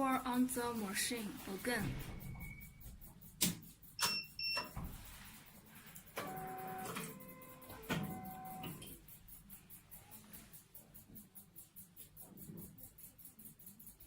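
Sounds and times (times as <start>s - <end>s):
short high beeps: 2.0s - 2.9s, 4.0s - 4.8s
machine motors running: 6.0s - 9.0s.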